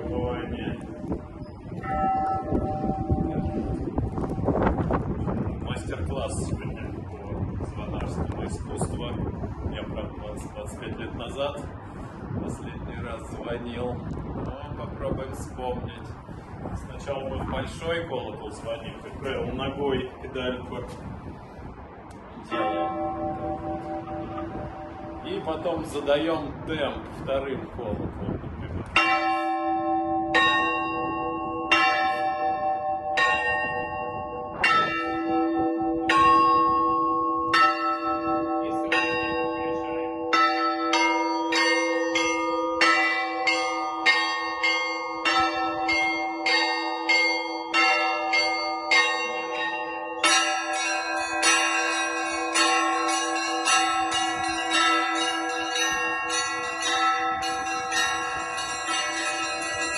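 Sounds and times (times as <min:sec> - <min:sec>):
big bell hum: 0:00.0 - 0:05.6, 0:22.4 - 0:26.0, 0:28.9 - 0:59.9
church bells pealing: 0:00.0 - 0:14.1, 0:22.4 - 0:27.8, 0:28.6 - 0:59.9.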